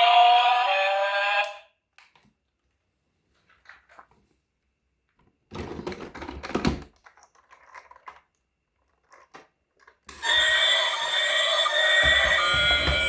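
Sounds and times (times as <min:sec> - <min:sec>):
plastic toys clattering: 0:05.5 - 0:10.1
loud electronic tune: 0:10.2 - 0:13.0.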